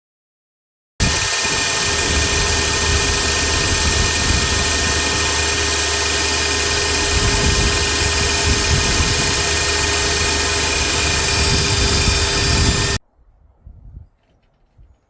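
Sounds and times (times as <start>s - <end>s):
table saw running: 1.0s - 13.0s.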